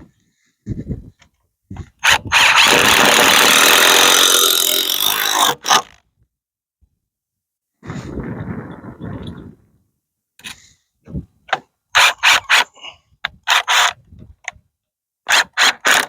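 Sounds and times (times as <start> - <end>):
cordless drill driving screw: 2.0 - 6.0, 13.4 - 14.0, 15.3 - 16.0.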